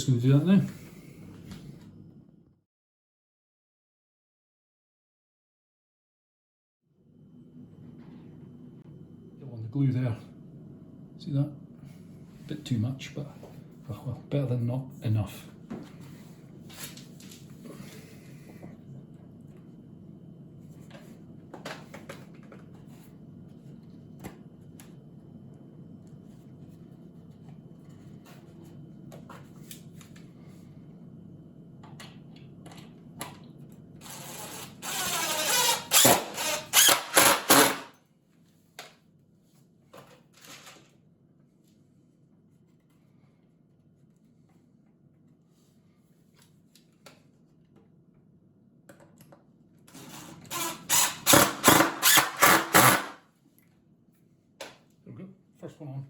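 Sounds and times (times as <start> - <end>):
low steady hum: 7.0 - 35.4
power drill whirring: 34.0 - 37.9, 49.9 - 53.2.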